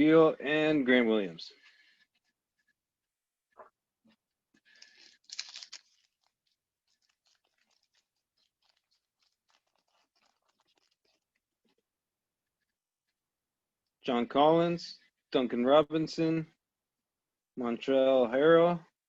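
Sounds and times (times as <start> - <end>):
cards rustling: 4.6 - 11.4
foil pack tearing and crinkling: 4.7 - 11.3.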